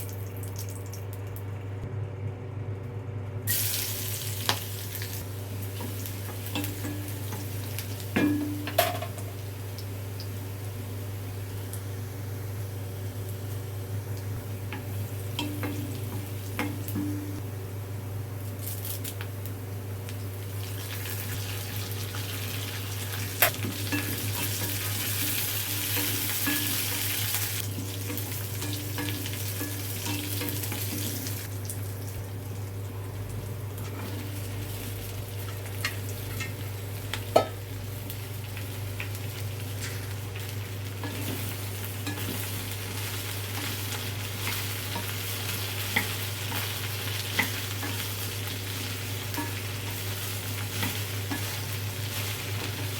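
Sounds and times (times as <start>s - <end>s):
okra sizzling in a pan: 3.5s - 52.9s
steady low hum: 5.1s - 18.6s.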